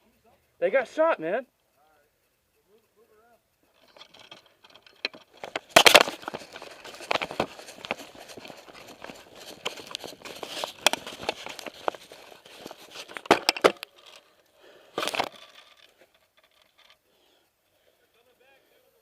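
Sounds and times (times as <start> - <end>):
twigs snapping: 4.0 - 14.2
dry leaves crackling underfoot: 5.3 - 13.0.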